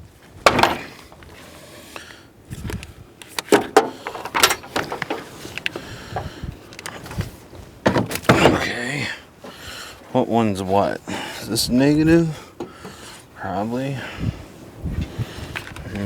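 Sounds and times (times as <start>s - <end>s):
batteries knocking and clunking: 3.2s - 7.1s.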